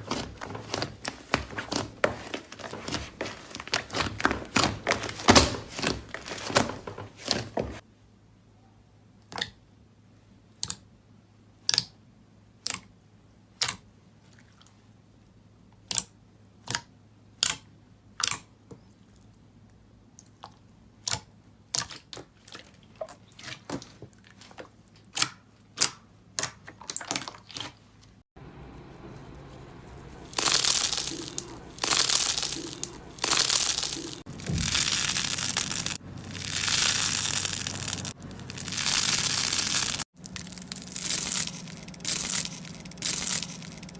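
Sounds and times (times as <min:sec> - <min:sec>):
slime popping and crackling: 0:00.0 - 0:07.7, 0:29.9 - 0:43.9.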